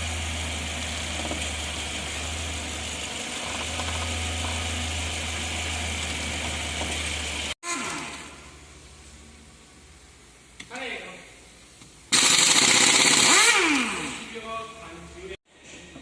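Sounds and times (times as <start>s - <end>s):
engine idling: 0.0s - 7.6s.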